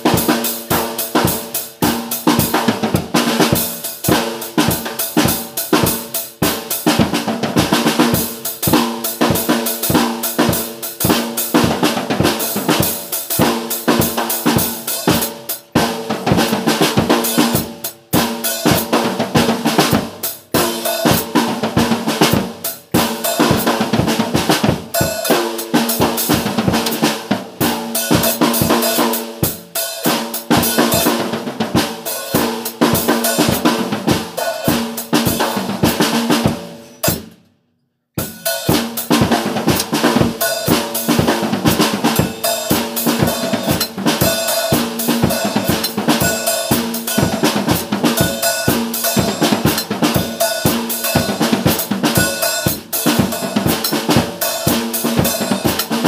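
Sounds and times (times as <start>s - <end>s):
music with drum beat: 0.0s - 37.4s, 38.2s - 56.0s.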